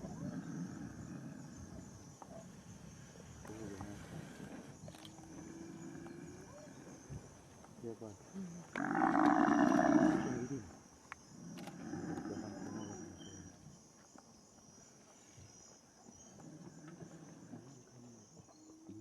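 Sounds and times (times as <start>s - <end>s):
insects chirring: 0.0s - 19.0s
large animal growling: 8.7s - 10.7s, 11.5s - 13.4s.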